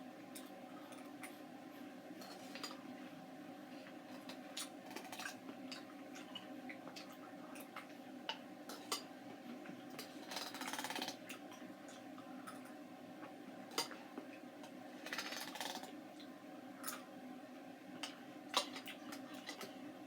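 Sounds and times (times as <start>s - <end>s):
utensil clicking against dish: 10.0s - 11.2s.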